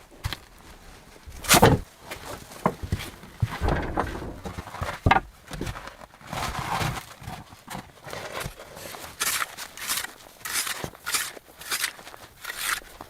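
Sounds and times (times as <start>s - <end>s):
crunching steps: 0.0s - 13.0s
scraping crunch: 0.0s - 13.0s
knocks: 3.5s - 5.3s.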